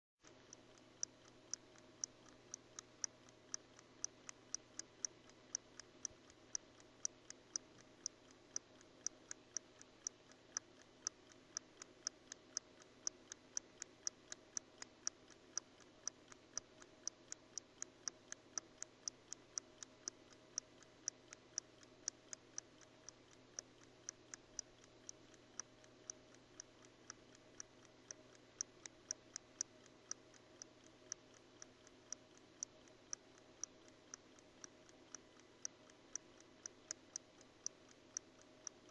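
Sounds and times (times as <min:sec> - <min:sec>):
pocket watch ticking: 0:00.2 - 0:38.9.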